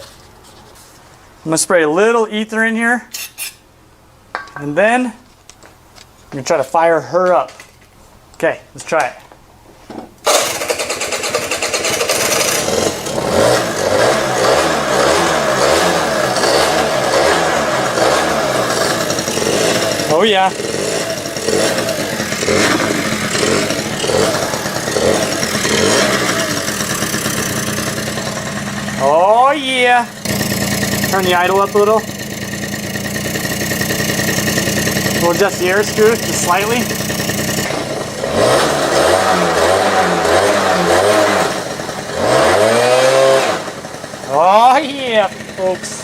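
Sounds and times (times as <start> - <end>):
scooter two-stroke engine running: 9.9 - 46.0.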